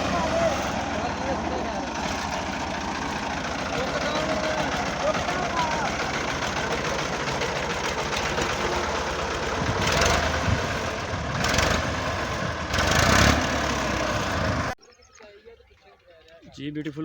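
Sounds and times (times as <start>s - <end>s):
tractor diesel engine knocking: 0.0s - 14.8s.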